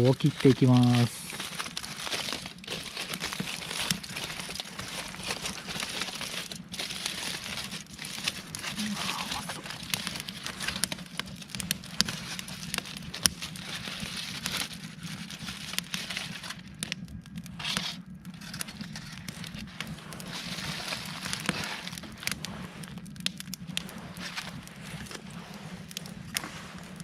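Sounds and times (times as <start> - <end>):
campfire crackling: 0.0 - 27.0
sharp pops of fire: 7.3 - 27.0.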